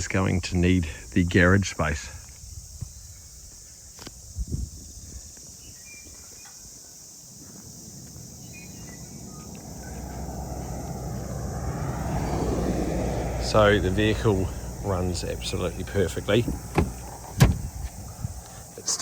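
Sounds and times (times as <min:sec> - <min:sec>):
car engine rumbling: 0:07.6 - 0:18.9
brief thumps: 0:16.3 - 0:18.4.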